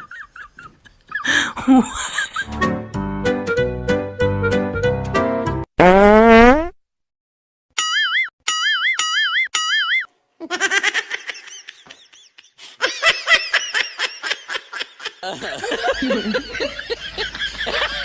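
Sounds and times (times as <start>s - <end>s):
voices: 15.2s - 18.0s.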